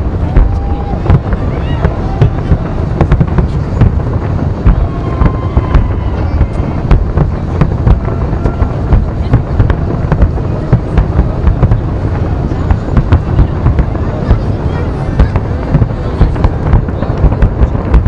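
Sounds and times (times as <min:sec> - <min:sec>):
fireworks whistles: 0:00.0 - 0:11.8
fireworks bangs and crackles: 0:00.0 - 0:18.0
heavy low rumble: 0:00.0 - 0:18.0.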